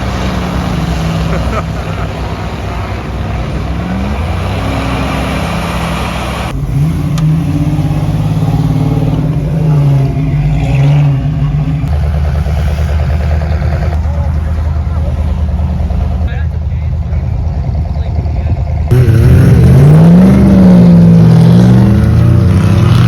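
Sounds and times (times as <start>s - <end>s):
off-road engines revving: 0.0s - 23.0s.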